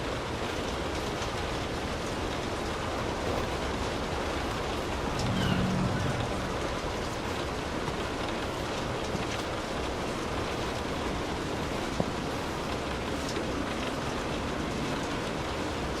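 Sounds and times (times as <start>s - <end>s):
light rain on a car: 0.0s - 5.2s, 5.8s - 16.0s
low rumble: 4.9s - 7.6s.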